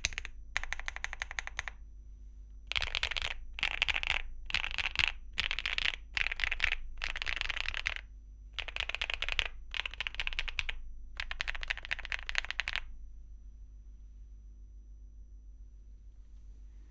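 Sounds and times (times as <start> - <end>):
typing on mechanical keyboard: 0.0 - 1.8, 2.7 - 12.9.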